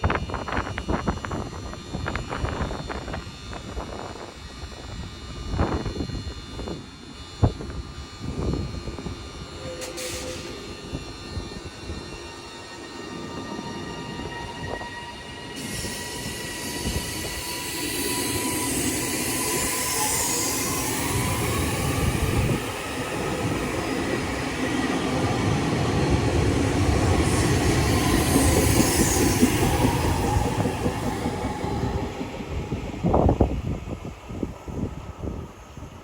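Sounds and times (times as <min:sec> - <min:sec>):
train running on track: 0:00.0 - 0:36.0
wheel squeal: 0:09.6 - 0:22.3.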